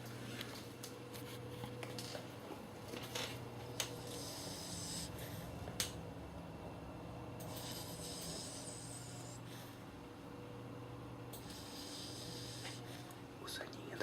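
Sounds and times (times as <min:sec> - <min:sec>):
steady low hum: 0:00.0 - 0:14.0
person snoring: 0:04.1 - 0:05.2, 0:11.4 - 0:12.9.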